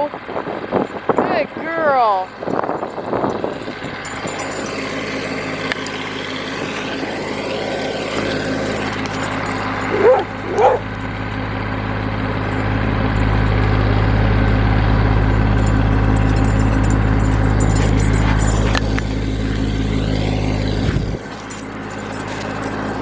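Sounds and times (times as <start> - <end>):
tractor engine running under load: 0.0 - 23.0
dog barking: 9.9 - 10.9.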